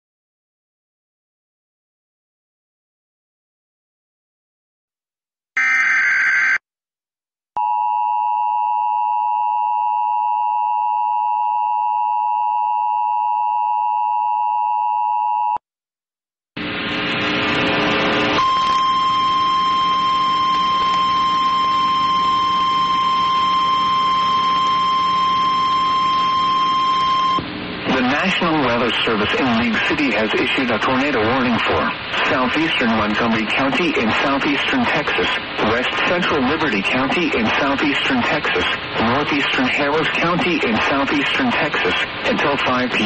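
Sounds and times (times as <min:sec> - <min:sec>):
harsh noisy blare: 0:05.6 - 0:06.6, 0:16.6 - 0:43.0
header data burst: 0:05.6 - 0:06.6
two-tone attention signal: 0:05.6 - 0:06.6, 0:18.4 - 0:27.4.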